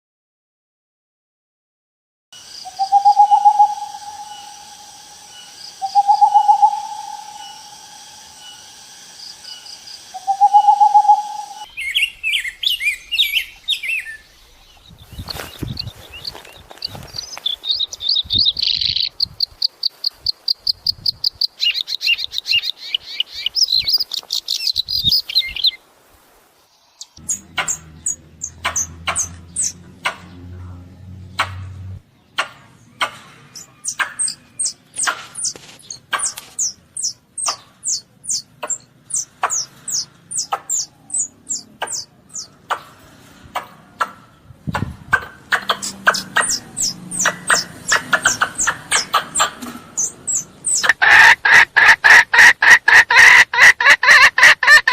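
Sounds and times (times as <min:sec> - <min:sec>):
low hum: 0:02.4 - 0:18.4, 0:27.2 - 0:32.1
fast high bird chirping: 0:02.4 - 0:25.8, 0:27.0 - 0:29.8, 0:33.5 - 0:42.5, 0:45.5 - 0:54.9
long drawn-out bird calls: 0:02.4 - 0:25.8, 0:32.2 - 0:43.2, 0:45.1 - 0:54.9.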